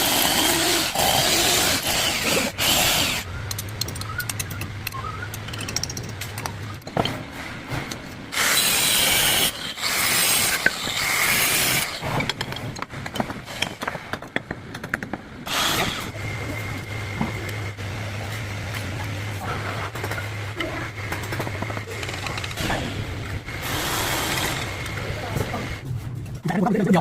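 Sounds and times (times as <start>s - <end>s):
knocks and clicks: 3.4s - 8.1s.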